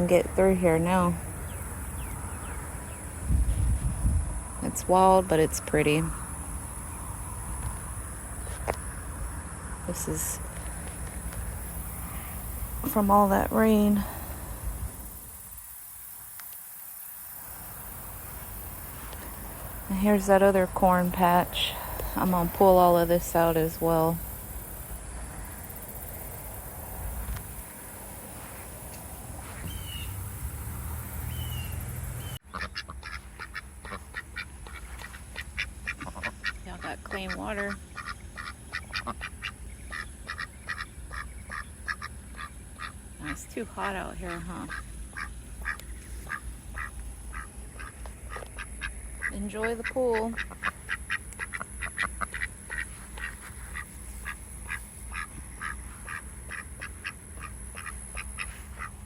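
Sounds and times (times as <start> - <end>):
outdoor background noise: 0.0 - 59.0
ducks quacking: 32.2 - 59.0.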